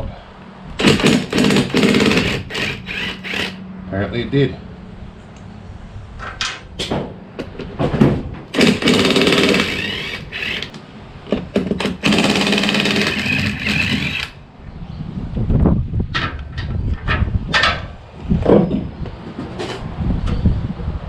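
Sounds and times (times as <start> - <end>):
impact wrench rattling: 8.6 - 10.7, 11.8 - 14.4.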